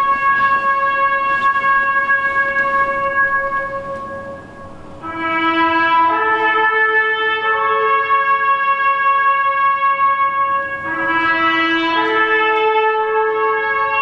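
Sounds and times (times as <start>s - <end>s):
trumpet playing slow melody: 0.0s - 14.0s.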